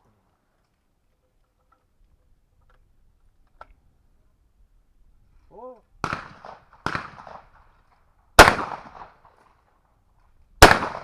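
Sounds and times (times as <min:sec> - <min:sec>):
shotgun firing: 0:06.0 - 0:07.5, 0:08.4 - 0:09.2, 0:10.6 - 0:11.0.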